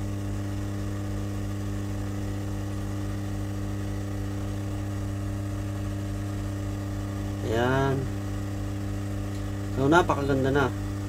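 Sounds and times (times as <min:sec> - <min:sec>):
hot air gun humming: 0:00.0 - 0:11.0.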